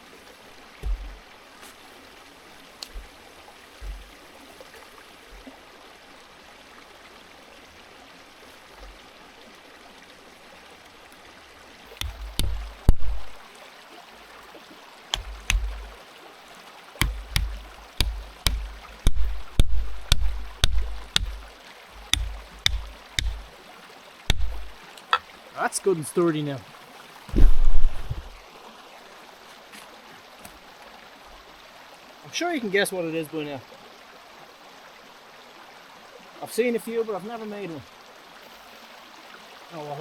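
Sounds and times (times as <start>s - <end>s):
stream flowing: 0.0s - 40.0s
wood being hammered: 0.8s - 1.2s, 3.8s - 4.1s, 12.0s - 13.4s, 15.2s - 16.0s, 17.0s - 23.6s, 24.3s - 25.3s.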